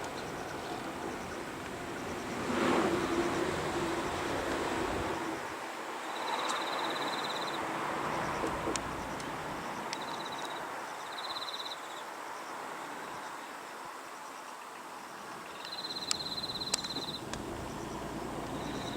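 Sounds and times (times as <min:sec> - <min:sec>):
insect trills: 0:00.0 - 0:18.9
outdoor hiss: 0:00.0 - 0:18.9.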